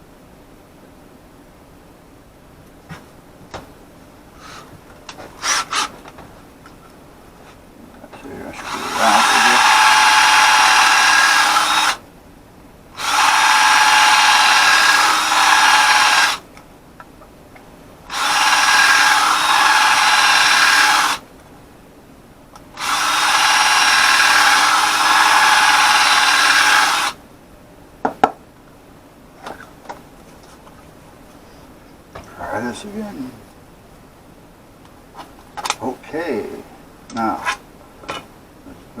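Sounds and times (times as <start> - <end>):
small power drill running: 8.6 - 12.0, 13.0 - 16.4, 18.1 - 21.2, 22.8 - 27.2.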